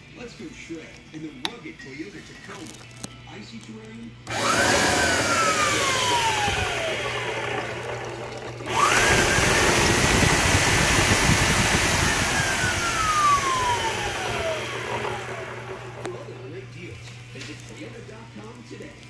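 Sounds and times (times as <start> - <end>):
power tool motor whining: 4.2 - 16.4.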